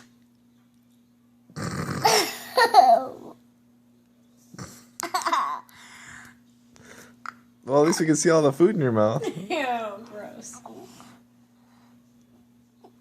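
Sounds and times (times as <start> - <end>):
child burping: 1.9 - 3.4
child laughing: 2.0 - 3.4, 5.0 - 5.7.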